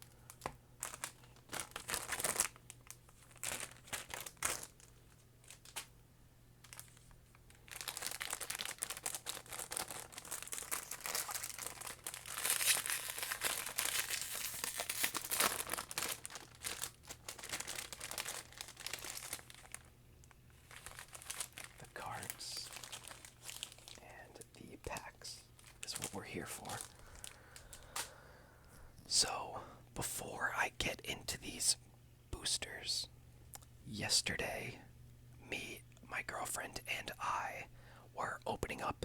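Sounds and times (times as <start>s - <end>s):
foil wrappers crinkling: 0.0s - 5.9s, 6.6s - 28.2s.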